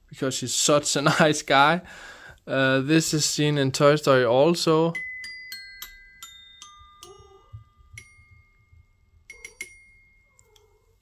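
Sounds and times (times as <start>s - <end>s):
toy bell-like notes struck: 5.0s - 10.7s.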